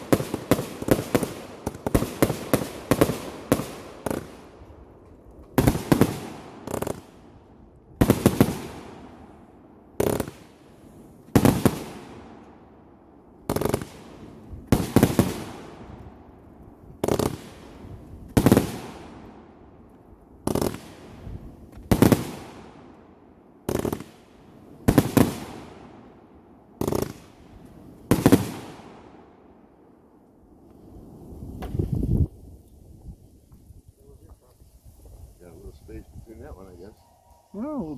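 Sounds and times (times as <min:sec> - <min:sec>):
fireworks bangs: 0:00.0 - 0:07.4, 0:08.0 - 0:12.7, 0:13.4 - 0:16.3, 0:17.0 - 0:19.6, 0:20.4 - 0:29.5.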